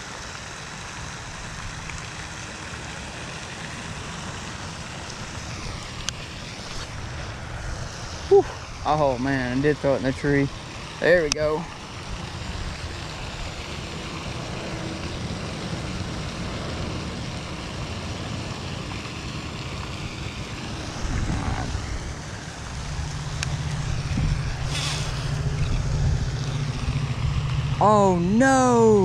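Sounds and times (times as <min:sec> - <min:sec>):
wind buffeting microphone: 0:19.9 - 0:27.8
short hiss: 0:24.6 - 0:25.7.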